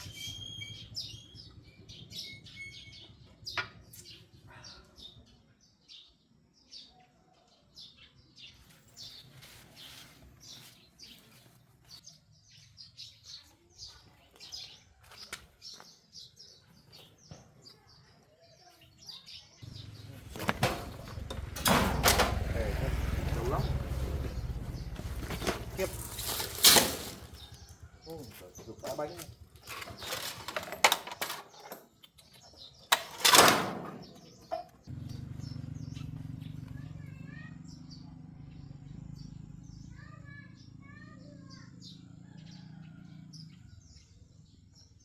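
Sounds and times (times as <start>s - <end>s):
small birds chirping: 0.0s - 21.6s, 22.3s - 33.2s, 33.8s - 45.0s
loud clattering noise: 20.3s - 27.5s, 29.6s - 31.6s.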